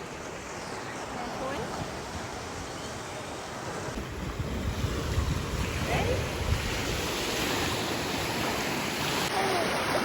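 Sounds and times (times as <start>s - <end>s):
waves washing on shore: 0.0s - 10.0s
wind buffeting microphone: 3.9s - 9.0s.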